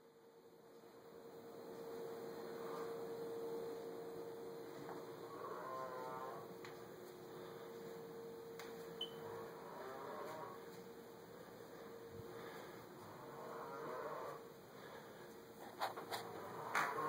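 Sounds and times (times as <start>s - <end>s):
steady hum: 0.0s - 17.0s
faint snoring: 5.2s - 6.5s, 9.2s - 10.6s, 13.0s - 14.4s, 16.2s - 17.0s.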